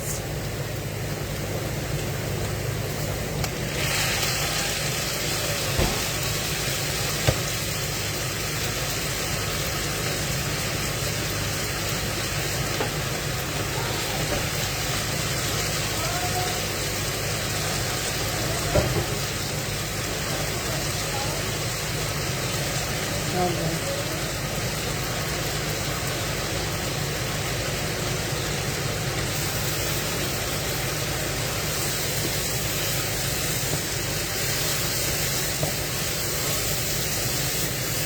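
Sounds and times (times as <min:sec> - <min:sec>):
hiss: 0:29.2 - 0:38.0.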